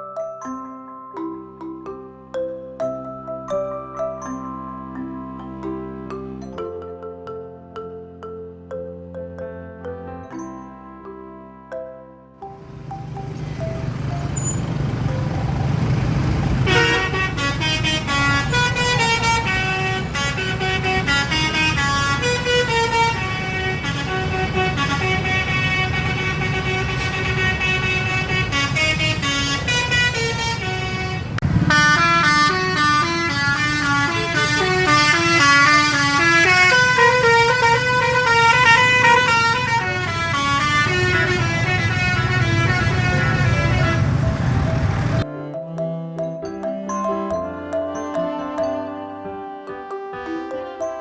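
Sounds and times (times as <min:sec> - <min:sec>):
multi-tone bus horn melody: 0:12.5 - 0:45.3, 0:46.8 - 0:51.0.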